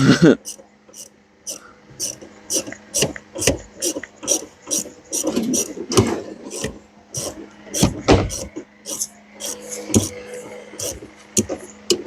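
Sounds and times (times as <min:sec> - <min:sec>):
ratchet wrench clicking: 0:00.4 - 0:05.7, 0:06.5 - 0:10.2, 0:10.8 - 0:11.0.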